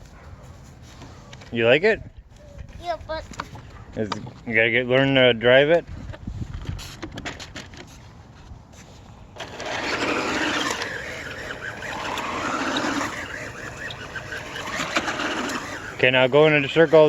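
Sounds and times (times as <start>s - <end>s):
rc car motor and tyres rushing: 9.3s - 17.0s.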